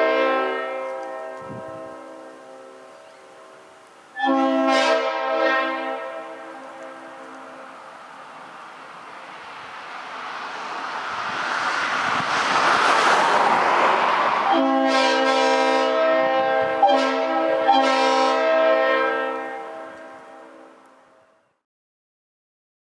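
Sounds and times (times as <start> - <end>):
train air horn chord: 0.0 - 7.8, 14.5 - 21.5
rushing air hiss: 0.5 - 14.6.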